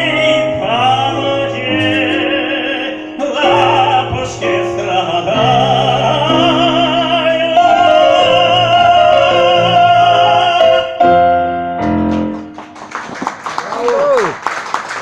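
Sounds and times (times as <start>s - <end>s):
operatic solo singing: 0.0s - 11.3s
piano accompaniment: 0.0s - 14.2s.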